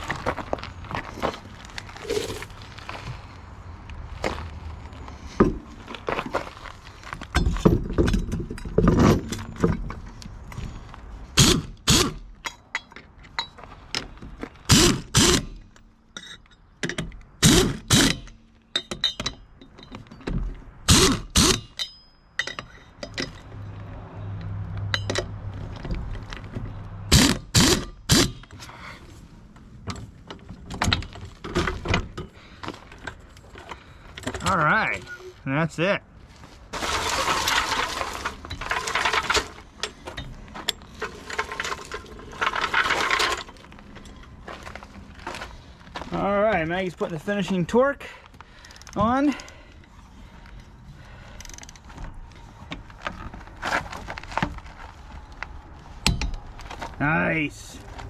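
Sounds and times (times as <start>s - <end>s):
wrench tightening lug nuts: 14.7s - 19.9s.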